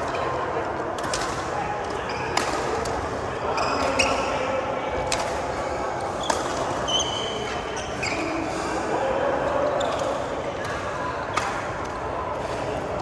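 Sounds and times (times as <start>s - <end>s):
racket hitting shuttlecock: 2.4s - 3.0s
shoes squeaking on court floor: 6.2s - 8.5s.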